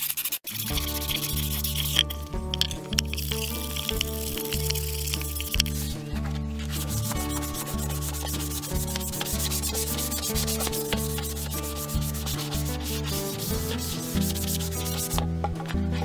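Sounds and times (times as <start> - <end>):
sandpaper scratching wood: 0.0 - 2.2, 3.2 - 6.0, 6.6 - 15.2.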